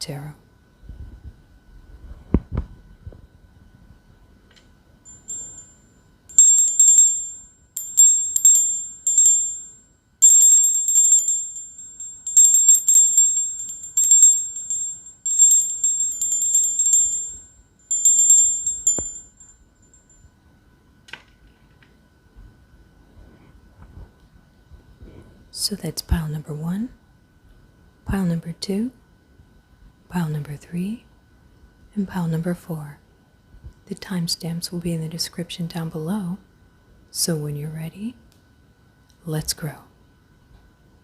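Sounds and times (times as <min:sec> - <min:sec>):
small bell trilling: 0:05.1 - 0:20.3.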